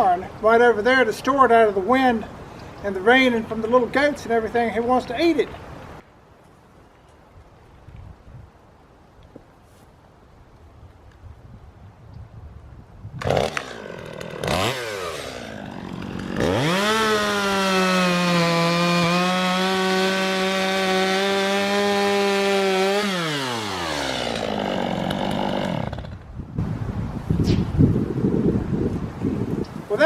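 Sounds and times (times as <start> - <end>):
chainsaw cutting hay bale: 13.2 - 26.3.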